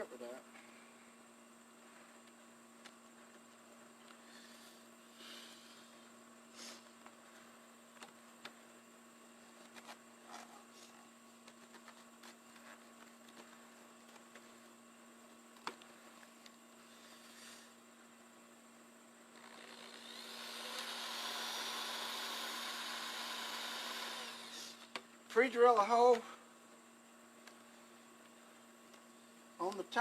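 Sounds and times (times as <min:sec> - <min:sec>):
power drill running: 0:19.4 - 0:24.9.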